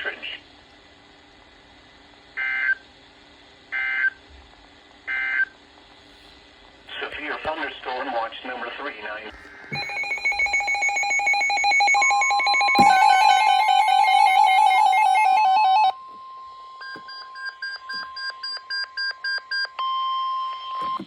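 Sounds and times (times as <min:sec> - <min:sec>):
trilling ring-like beeps: 0:09.7 - 0:19.5
steady alert tone: 0:09.8 - 0:15.9.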